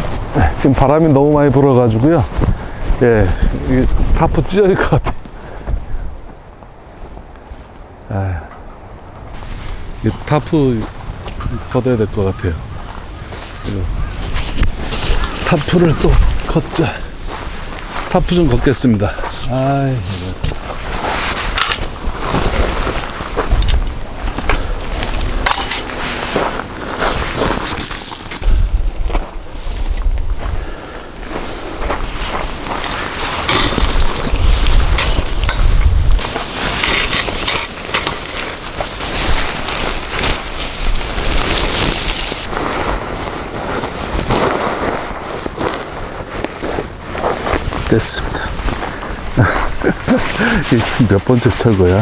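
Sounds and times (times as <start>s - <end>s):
gusty wind on microphone: 2.2s - 50.7s
tarp poles knocking and rattling: 19.3s - 26.2s, 32.4s - 43.0s
tarp fabric flapping: 36.0s - 52.0s.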